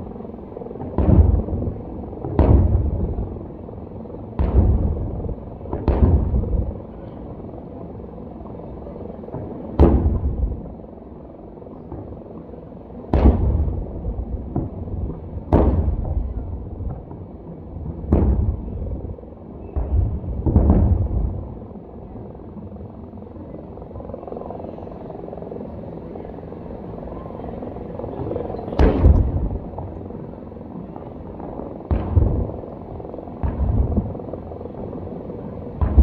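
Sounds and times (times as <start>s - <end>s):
low background rumble: 0.0s - 36.0s
fireworks booming: 0.8s - 3.4s, 4.3s - 6.9s, 9.3s - 10.7s, 13.1s - 21.6s, 28.2s - 29.9s, 30.9s - 32.6s, 33.4s - 34.3s, 35.7s - 36.0s.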